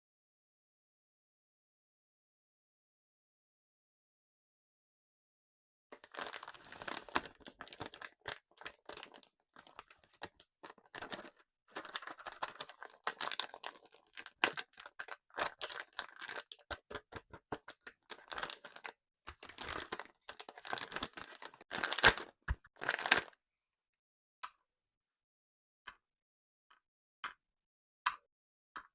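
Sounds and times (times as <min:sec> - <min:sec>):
candy wrappers crinkling: 0:06.0 - 0:23.3.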